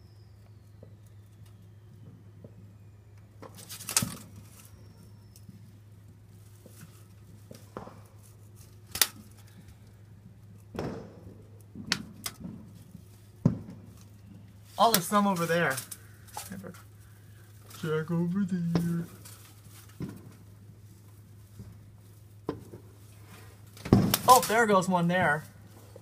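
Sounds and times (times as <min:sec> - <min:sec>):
steady low hum: 0:00.0 - 0:26.0
fireworks bangs and pops: 0:10.7 - 0:14.0, 0:23.9 - 0:24.6.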